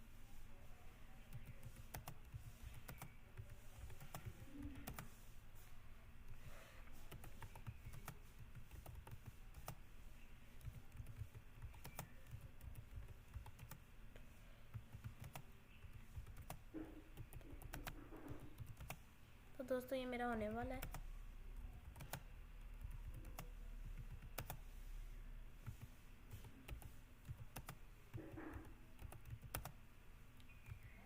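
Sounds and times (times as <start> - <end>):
typing on computer keyboard: 1.3 - 5.1, 7.0 - 9.8, 10.6 - 13.8, 14.7 - 19.0, 20.7 - 21.0, 21.6 - 24.6, 25.6 - 29.8.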